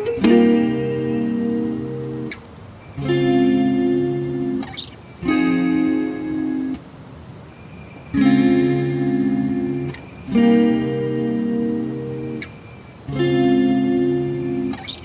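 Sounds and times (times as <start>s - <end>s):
lo-fi guitar chords: 0.0s - 2.4s, 3.0s - 6.8s, 8.2s - 15.0s.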